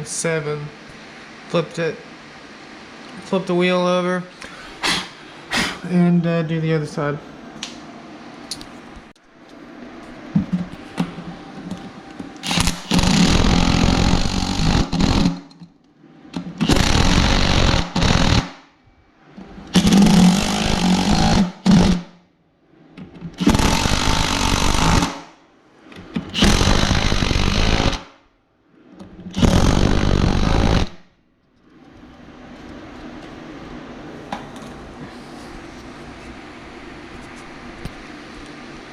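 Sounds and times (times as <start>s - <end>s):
power drill drilling metal: 12.4s - 15.4s, 16.6s - 18.4s, 19.7s - 22.0s, 23.4s - 25.2s, 26.4s - 28.0s, 29.4s - 31.0s.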